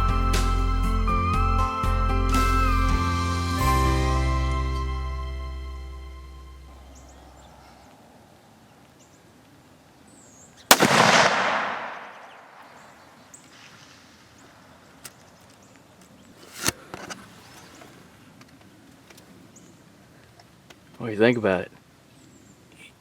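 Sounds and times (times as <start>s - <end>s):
rifle shot: 10.7s - 12.8s.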